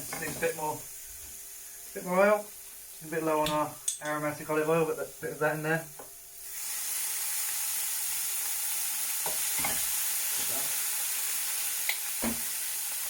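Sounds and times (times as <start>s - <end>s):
food sizzling in a frying pan: 0.0s - 13.0s.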